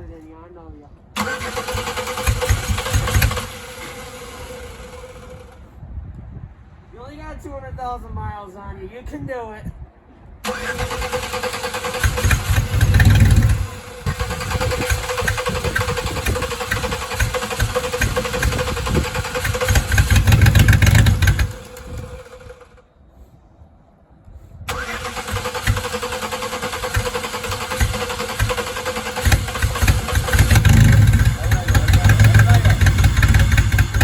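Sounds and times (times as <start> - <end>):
starter cranking car engine: 1.2 - 5.7, 10.4 - 22.8, 24.7 - 34.0.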